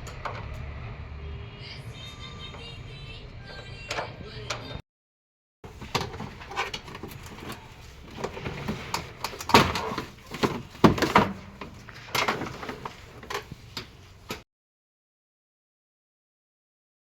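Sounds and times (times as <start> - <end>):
metal knocks and clatters: 5.7 - 13.7.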